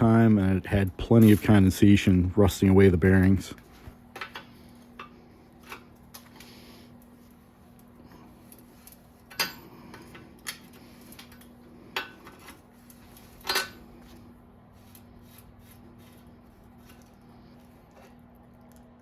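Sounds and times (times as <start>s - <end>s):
metal bicycle parts clinking: 8.4s - 14.2s.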